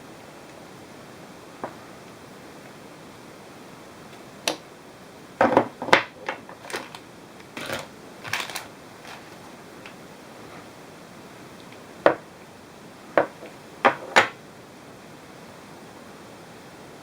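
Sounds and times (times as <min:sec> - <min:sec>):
hard plastic parts clicking together: 0:06.2 - 0:09.2.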